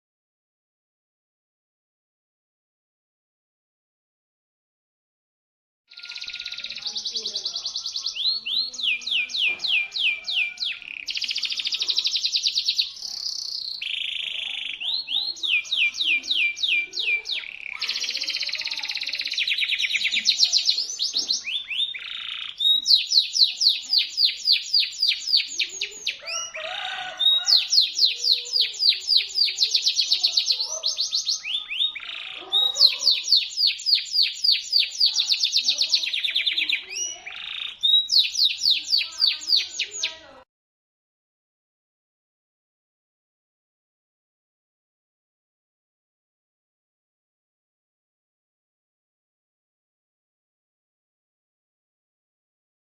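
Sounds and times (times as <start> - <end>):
canary singing trills: 5.9 - 40.4.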